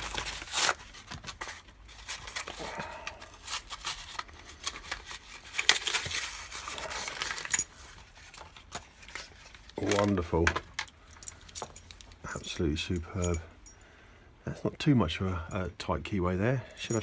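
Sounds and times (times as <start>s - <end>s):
packaging tearing and crinkling: 0.0s - 10.4s.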